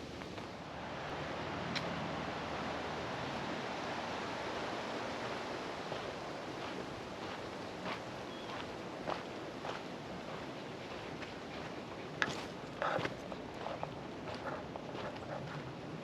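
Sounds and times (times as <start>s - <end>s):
wind rushing through trees: 0.0s - 16.0s
faint footsteps on trail: 5.0s - 16.0s.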